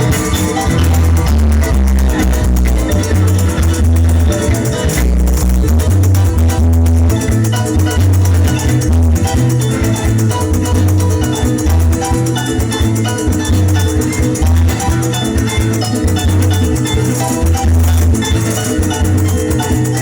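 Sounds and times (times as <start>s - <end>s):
deep bass line: 0.0s - 20.0s
harp and plucked strings: 0.0s - 20.0s
maracas shaking: 0.0s - 20.0s.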